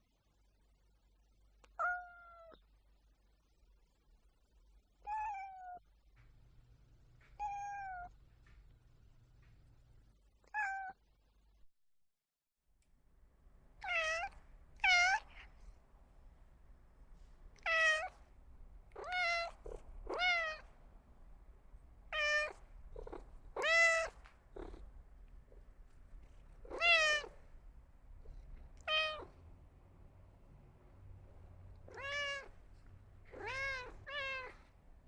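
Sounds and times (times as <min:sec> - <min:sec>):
cat meowing: 0:01.8 - 0:02.6, 0:05.1 - 0:05.8, 0:07.4 - 0:08.2, 0:10.5 - 0:11.0, 0:13.8 - 0:15.5, 0:17.5 - 0:18.2, 0:18.9 - 0:20.7, 0:22.1 - 0:24.8, 0:26.6 - 0:27.4, 0:28.3 - 0:29.4, 0:31.8 - 0:32.6, 0:33.3 - 0:34.7.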